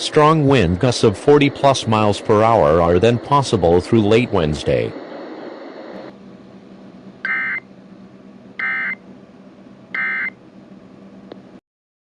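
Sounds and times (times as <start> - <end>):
radio hiss and hum: 0.0 - 7.6.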